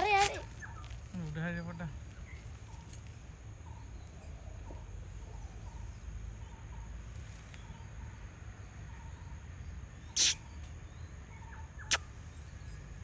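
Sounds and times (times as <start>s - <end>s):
faint short bird chirps: 10.1s - 10.7s.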